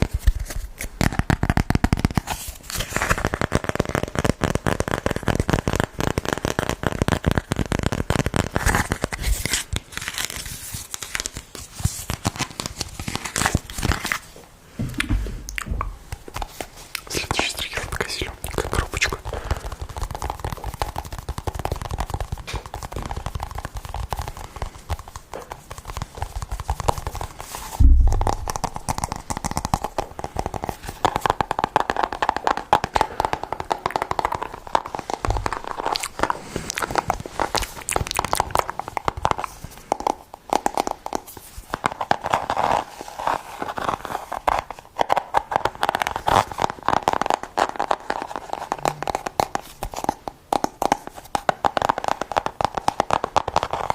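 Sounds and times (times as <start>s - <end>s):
louder thump: 27.8s - 28.6s.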